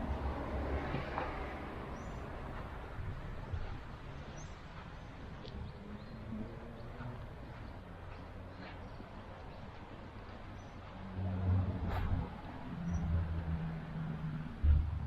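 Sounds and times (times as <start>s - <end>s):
wind rumble: 0.0s - 7.6s, 11.0s - 15.0s
distant traffic: 0.0s - 15.0s
vehicle passing: 10.8s - 15.0s.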